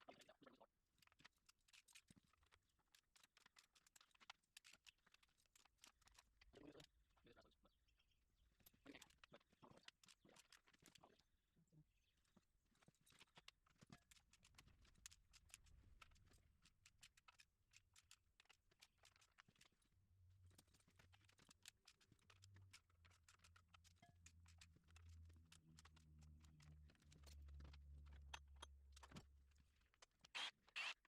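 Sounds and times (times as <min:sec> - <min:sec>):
faint clicks and taps: 0:01.0 - 0:11.3, 0:12.1 - 0:30.4.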